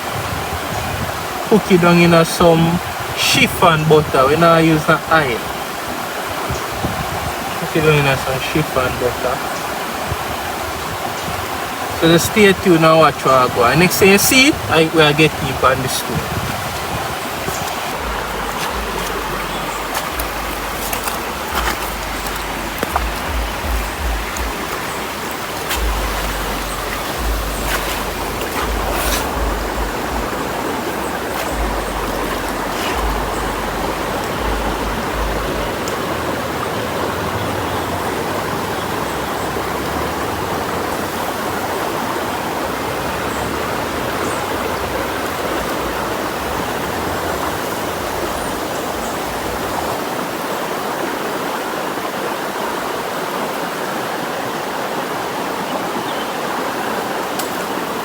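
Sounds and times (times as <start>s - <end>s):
river water rushing: 0.0s - 58.0s
low rumbles: 16.0s - 40.7s.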